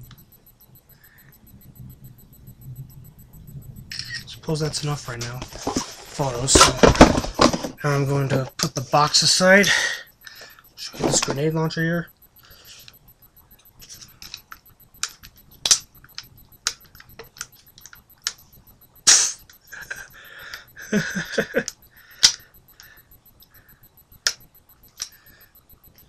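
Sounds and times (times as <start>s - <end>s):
sharp clicks and knocks: 0.0s - 0.9s, 2.8s - 8.8s, 12.2s - 20.7s, 21.6s - 26.0s.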